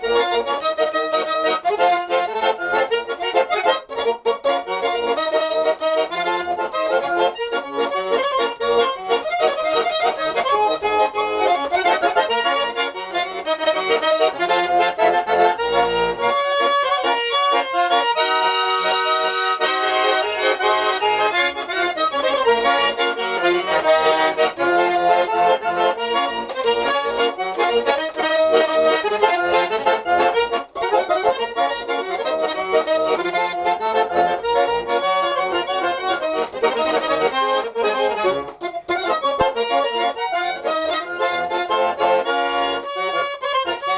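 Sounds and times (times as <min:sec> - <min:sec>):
button accordion melody: 0:00.0 - 0:43.9.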